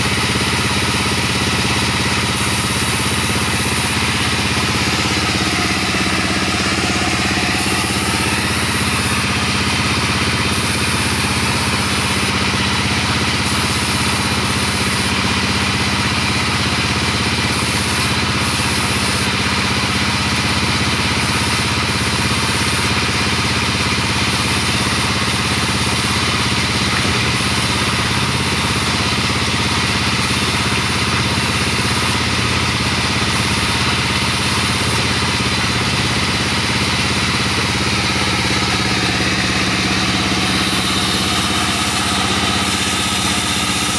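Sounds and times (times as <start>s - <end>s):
sawmill machine engine running: 0.0s - 43.9s.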